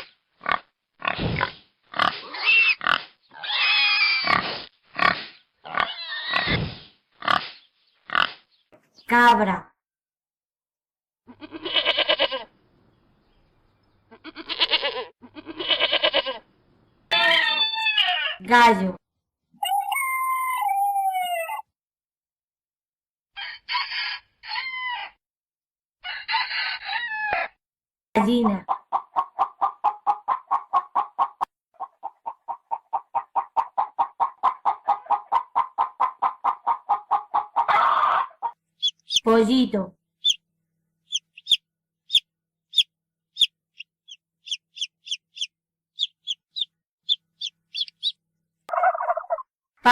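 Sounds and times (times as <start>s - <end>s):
goat bleating: 11.3s - 12.5s, 14.1s - 16.4s
hen clucking: 28.4s - 39.3s, 44.1s - 49.5s.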